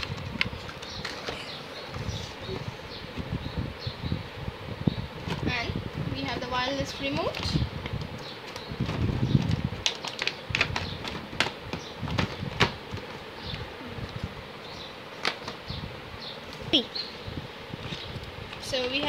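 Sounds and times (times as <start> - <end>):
packaging rustling: 0.0 - 2.2, 8.4 - 13.2.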